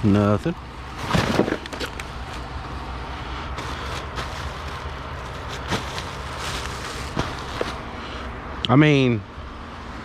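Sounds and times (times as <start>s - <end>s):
vehicle engine running: 0.0s - 8.6s
knocks and clicks of items moved: 1.0s - 2.4s, 3.6s - 7.8s.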